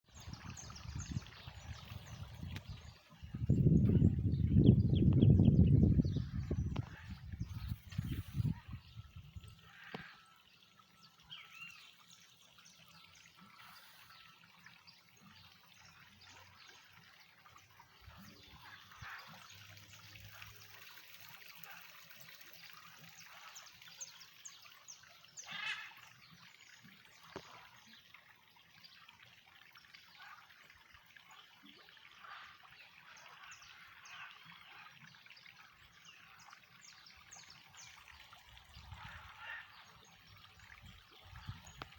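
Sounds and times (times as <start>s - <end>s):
stream trickling: 0.0s - 41.9s.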